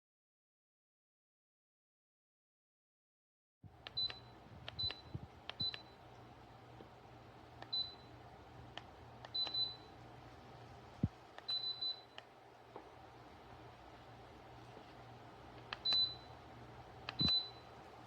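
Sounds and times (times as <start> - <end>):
low steady hum: 3.7 - 18.0
heater clicks and metallic tinks: 17.0 - 17.7.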